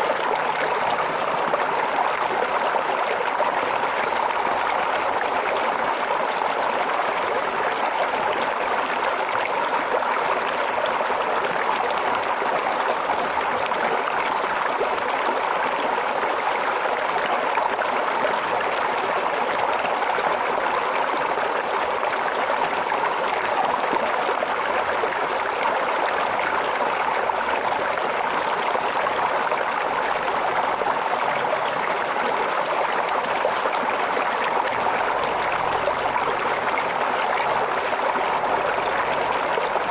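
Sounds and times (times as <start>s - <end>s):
stream babbling over stones: 0.0s - 39.9s.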